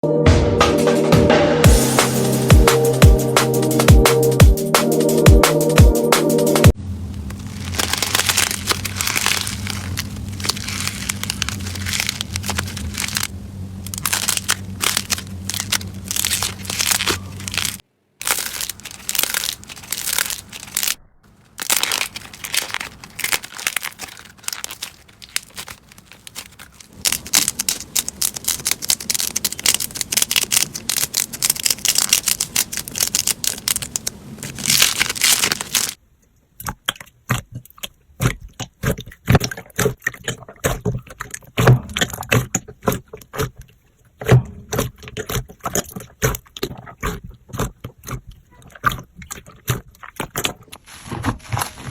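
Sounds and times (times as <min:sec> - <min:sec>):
slime squeezed with crackling pops: 0:07.3 - 0:36.0, 0:36.6 - 0:51.9.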